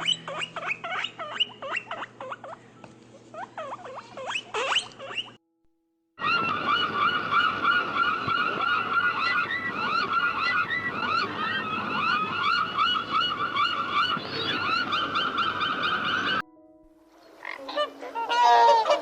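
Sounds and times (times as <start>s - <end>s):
chorus of small animals chirping: 0.0s - 2.6s, 3.4s - 5.4s, 6.2s - 16.4s.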